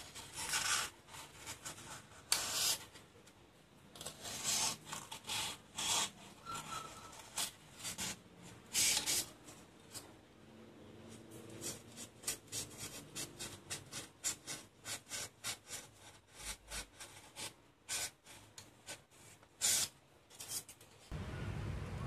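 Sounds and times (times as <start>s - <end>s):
steady low noise: 21.1s - 22.0s.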